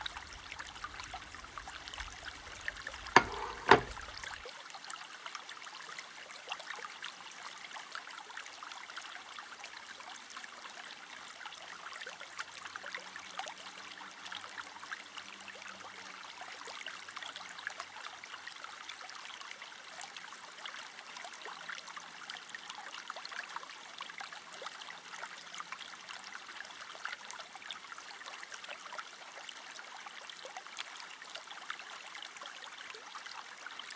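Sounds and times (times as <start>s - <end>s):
food sizzling in a frying pan: 3.2s - 4.0s
sharp knocks: 3.2s - 4.0s.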